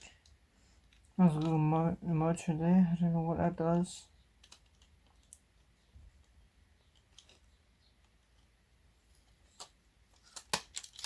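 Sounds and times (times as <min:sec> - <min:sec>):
handling clicks of small parts: 0:00.0 - 0:01.6, 0:04.4 - 0:05.5, 0:06.2 - 0:08.2, 0:09.6 - 0:11.0
faint low hum: 0:00.0 - 0:10.6.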